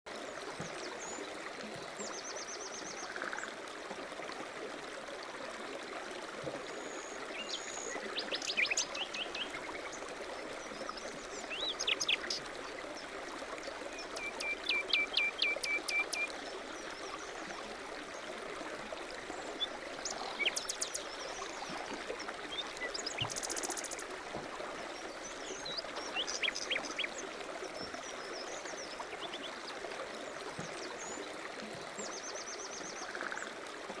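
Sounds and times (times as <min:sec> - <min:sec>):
flowing water rushing: 0:00.1 - 0:34.0
songbirds chirping: 0:06.7 - 0:18.3, 0:18.9 - 0:33.3.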